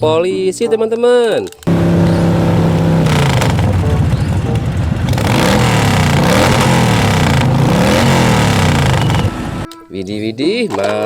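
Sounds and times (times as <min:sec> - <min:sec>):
motorcycle engine revving: 0:01.7 - 0:09.7.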